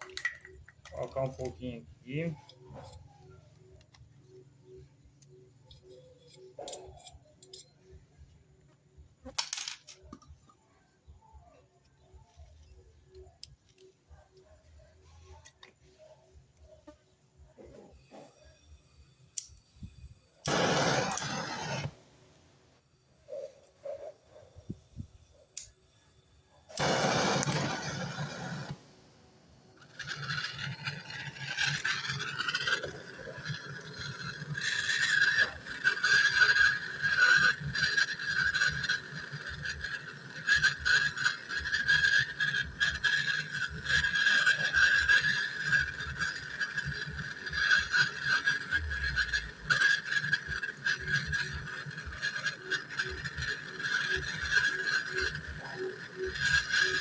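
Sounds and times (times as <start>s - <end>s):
torch flame hissing and crackling: 18.0s - 57.0s.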